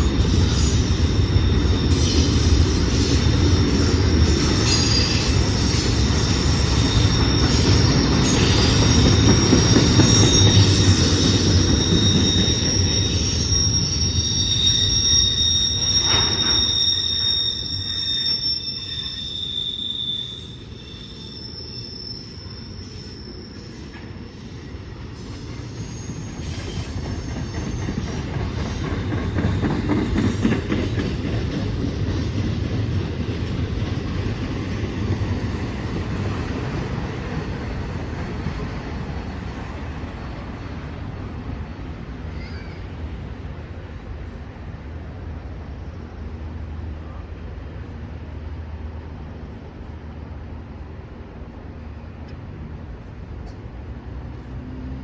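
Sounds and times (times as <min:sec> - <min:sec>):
high-pitched wheel squeal: 0:00.0 - 0:24.5, 0:25.2 - 0:30.5
freight train cars rumbling: 0:00.0 - 0:55.0.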